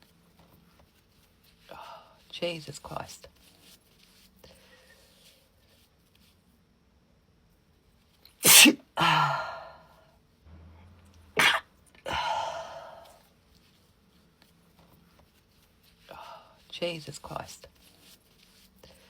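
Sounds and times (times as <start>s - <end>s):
woman sneezing: 8.4s - 9.8s, 11.4s - 13.1s.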